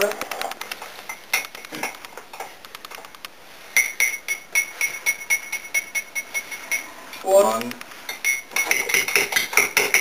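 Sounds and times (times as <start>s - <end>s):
spoon clinking against cup: 3.8s - 6.9s, 8.1s - 10.0s.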